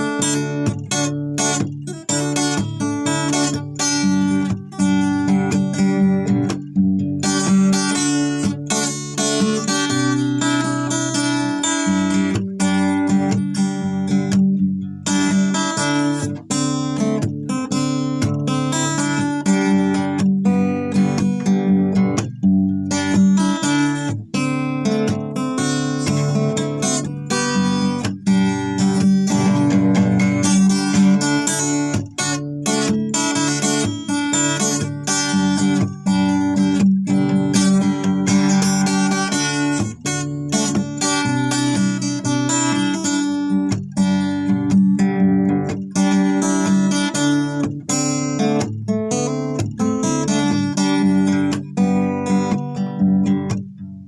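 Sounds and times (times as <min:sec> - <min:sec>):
acoustic guitar strumming: 0:00.0 - 0:54.0.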